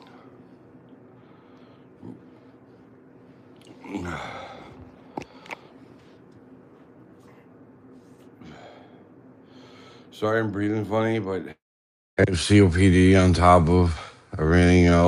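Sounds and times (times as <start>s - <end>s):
man breathing heavily: 0.0s - 6.2s, 8.2s - 10.1s.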